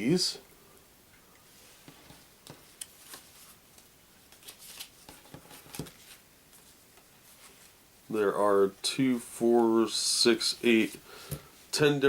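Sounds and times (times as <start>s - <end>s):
playing cards handled on table: 1.8s - 7.7s.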